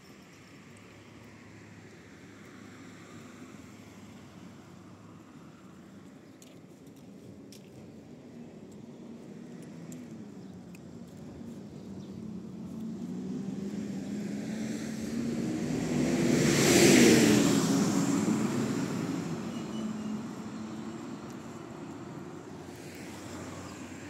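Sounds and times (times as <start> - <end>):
bus driving past: 11.6 - 24.0.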